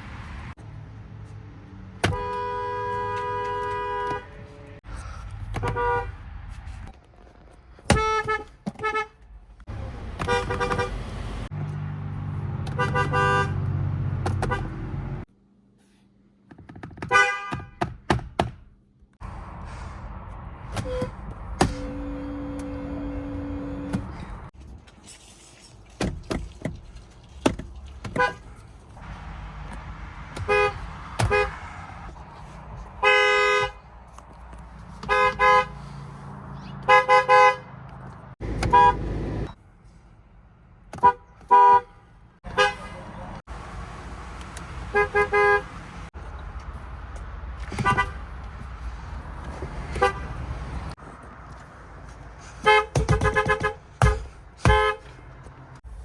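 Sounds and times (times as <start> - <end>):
car horns honking: 2.0 - 4.8, 5.5 - 6.2, 7.9 - 9.2, 10.2 - 11.1, 12.6 - 14.9, 17.0 - 18.0, 20.7 - 24.4, 28.1 - 28.4, 30.3 - 31.8, 33.0 - 33.8, 35.0 - 36.0, 36.7 - 37.8, 38.4 - 39.6, 41.0 - 43.2, 44.9 - 46.1, 47.6 - 48.3, 49.9 - 50.6, 52.6 - 55.2.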